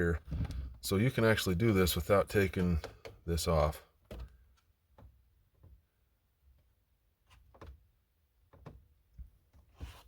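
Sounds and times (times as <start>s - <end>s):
faint clicks and light knocks: 2.4s - 3.4s.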